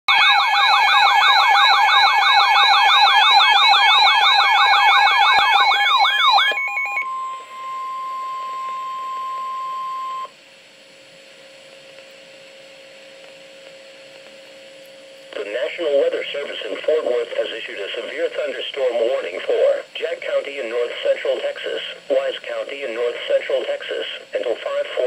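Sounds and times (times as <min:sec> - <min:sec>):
warbling alert siren: 0:00.1 - 0:10.3
faint hum: 0:01.9 - 0:25.0
steady alert tone: 0:03.5 - 0:10.3.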